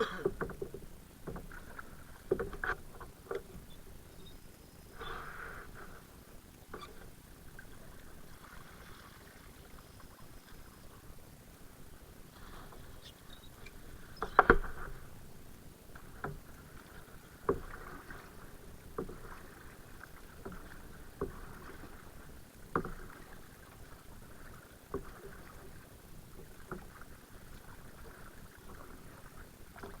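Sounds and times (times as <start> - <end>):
water swishing: 0.0 - 30.0
paddle stroke knocks: 14.2 - 15.0.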